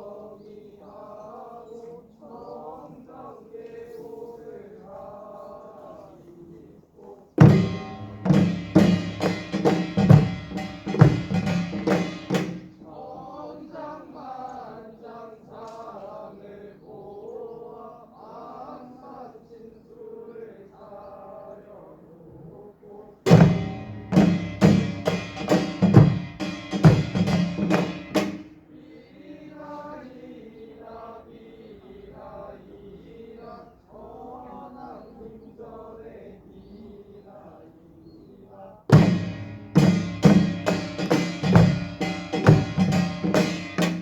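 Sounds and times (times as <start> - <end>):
drum and gong percussion: 7.4 - 12.8, 23.3 - 28.5, 38.9 - 44.0.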